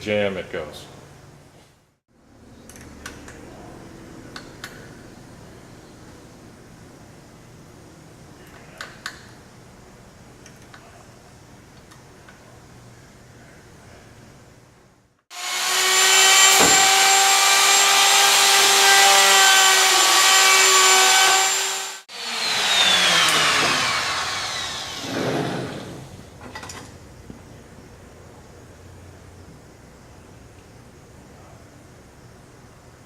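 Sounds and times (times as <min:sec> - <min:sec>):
router running: 0:15.3 - 0:26.2
router spinning down whine: 0:15.3 - 0:26.2.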